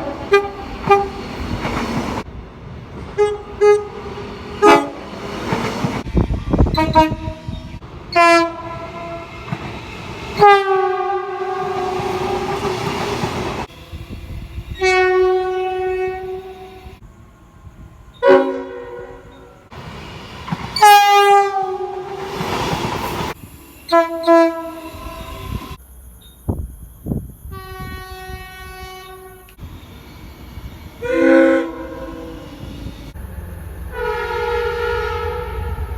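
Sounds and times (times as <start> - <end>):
train horn blasts: 0.0 - 1.3, 3.2 - 5.1, 6.2 - 9.4, 10.4 - 12.9, 14.6 - 17.0, 18.2 - 19.7, 20.8 - 22.4, 23.9 - 25.8, 27.5 - 29.6, 31.0 - 35.9
rumble of passing train: 0.0 - 35.9.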